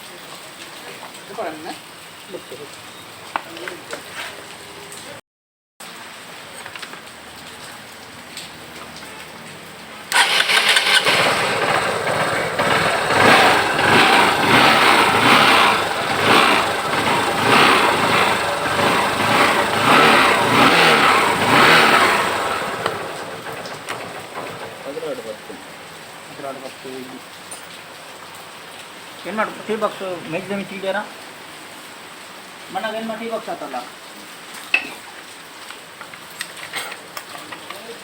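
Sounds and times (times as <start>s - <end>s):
motorcycle engine starting and revving: 6.6s - 28.3s.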